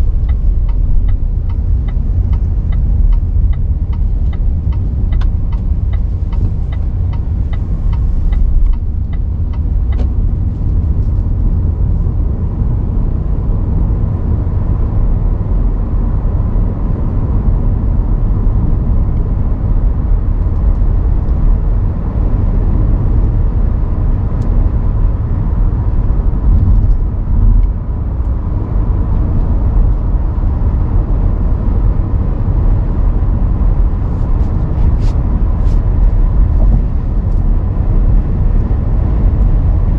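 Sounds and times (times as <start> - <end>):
regular ticking: 0.0 - 10.1
car road and engine rumble: 0.0 - 39.9.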